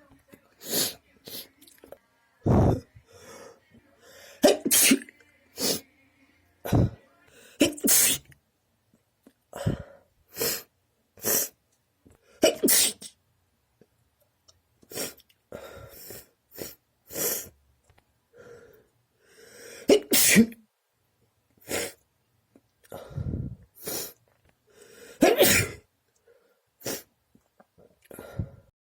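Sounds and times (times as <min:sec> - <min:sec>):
person sneezing: 0:02.5 - 0:02.9, 0:04.4 - 0:05.8, 0:07.6 - 0:08.3, 0:12.4 - 0:13.2, 0:19.9 - 0:20.6, 0:25.2 - 0:25.8.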